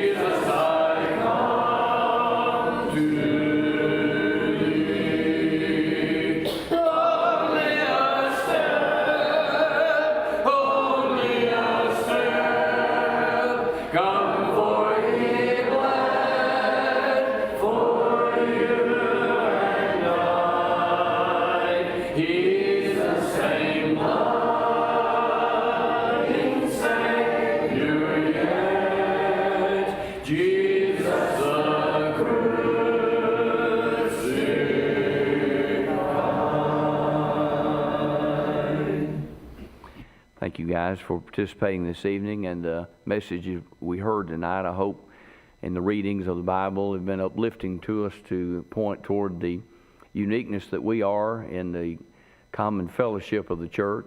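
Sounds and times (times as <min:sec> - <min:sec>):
congregation singing a hymn: 0:00.0 - 0:40.4.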